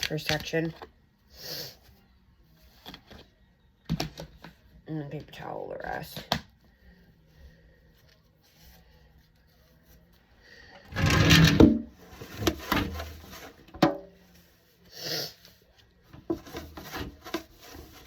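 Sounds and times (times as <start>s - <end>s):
loud rubbing scrape: 10.9s - 11.9s.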